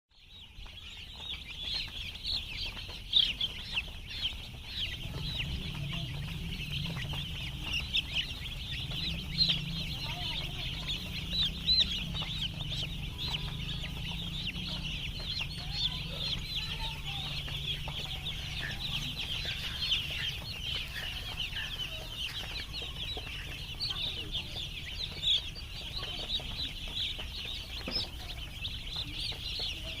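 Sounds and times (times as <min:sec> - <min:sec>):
chickens peeping and clucking: 0:00.2 - 0:30.0.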